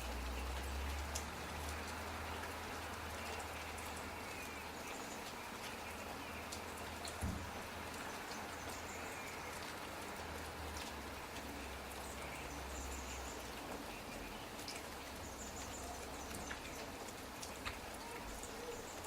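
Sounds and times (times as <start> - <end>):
faint drip ticks: 0.0 - 19.0
steady rain falling: 0.0 - 19.0.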